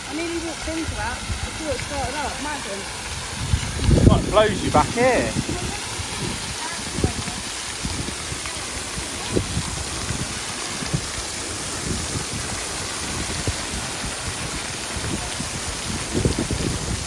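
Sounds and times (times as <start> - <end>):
water jet spraying: 0.0 - 17.0.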